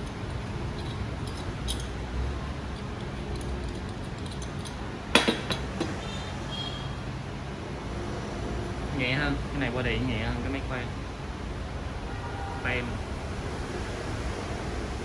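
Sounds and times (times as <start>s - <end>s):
sharp clack and rattle: 0.0s - 6.0s
plastic tool body clicks and knocks: 5.1s - 6.0s.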